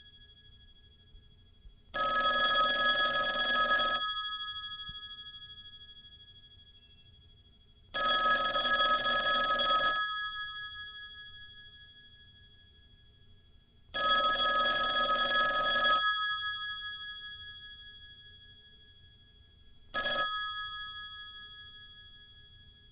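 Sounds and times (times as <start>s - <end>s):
telephone bell ringing: 2.0s - 5.6s, 8.0s - 11.7s, 14.0s - 18.2s, 19.9s - 22.9s.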